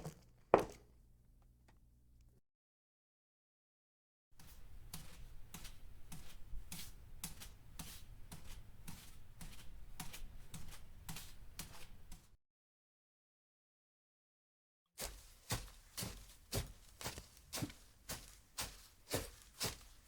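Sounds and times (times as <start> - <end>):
footsteps walking: 4.4 - 12.3, 15.0 - 20.0.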